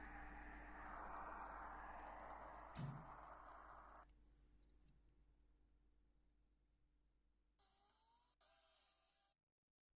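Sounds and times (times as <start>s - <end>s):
faint rising tone: 0.0s - 4.0s
faint low hum: 0.0s - 5.2s.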